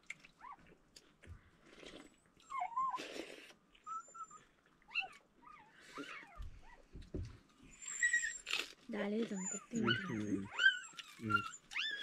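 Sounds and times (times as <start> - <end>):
dog whimpering and whining: 2.4 - 3.1, 3.8 - 6.9, 7.6 - 8.5, 9.2 - 12.0.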